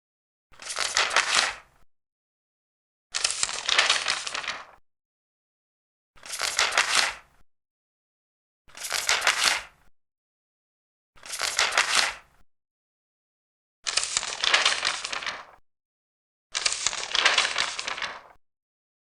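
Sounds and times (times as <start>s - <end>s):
paper pages turning: 0.6s - 1.6s, 3.2s - 4.8s, 6.2s - 7.2s, 8.7s - 9.7s, 11.2s - 12.2s, 13.9s - 15.6s, 16.6s - 18.4s.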